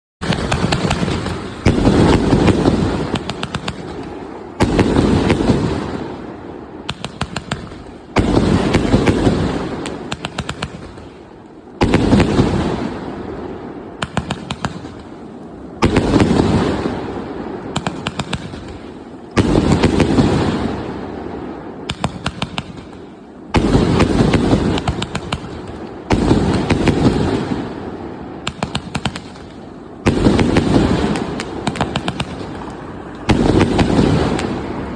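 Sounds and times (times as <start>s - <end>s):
firework bursts with crackles: 0.2s - 34.9s.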